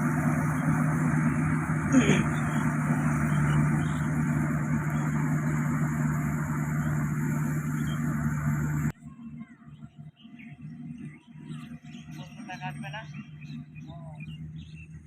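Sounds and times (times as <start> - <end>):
combine harvester running: 0.0 - 9.0.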